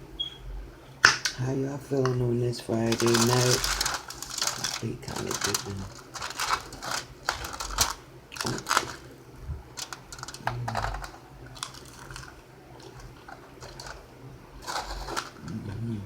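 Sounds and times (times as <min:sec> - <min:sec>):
person crunching fried food: 0:02.9 - 0:09.1, 0:09.7 - 0:14.0, 0:14.6 - 0:15.9.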